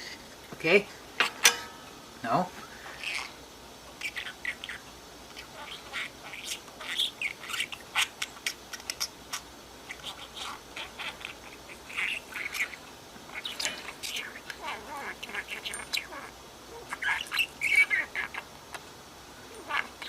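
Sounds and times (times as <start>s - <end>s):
budgerigar chirping and squawking: 4.0s - 18.5s.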